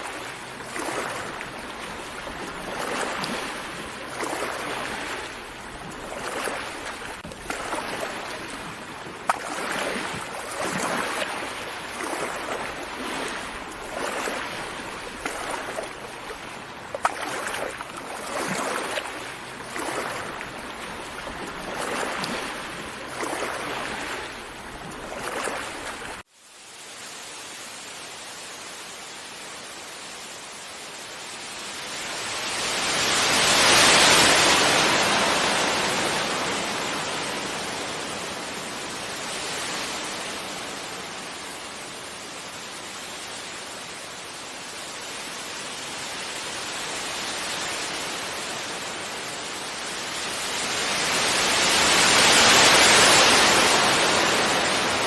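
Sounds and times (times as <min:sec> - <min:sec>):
sea waves washing onto beach: 0:00.0 - 0:55.0.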